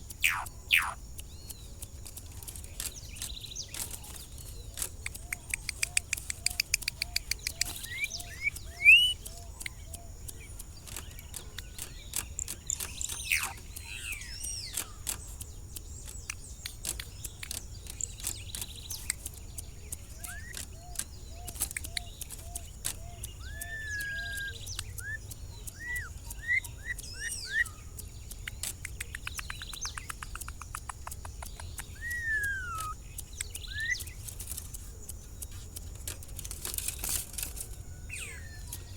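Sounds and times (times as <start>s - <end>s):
bird rattling trills: 0.0s - 38.9s
bird sharp clicks: 0.0s - 38.9s
bird whistled calls: 0.2s - 1.0s, 5.1s - 10.1s, 12.7s - 15.0s, 20.1s - 27.8s, 31.8s - 34.2s.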